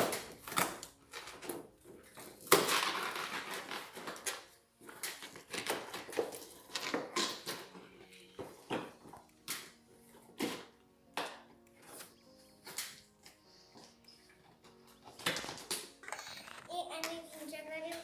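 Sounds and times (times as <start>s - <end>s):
packaging crinkling: 0.0s - 9.8s
packaging knocks and rustles: 0.0s - 10.8s.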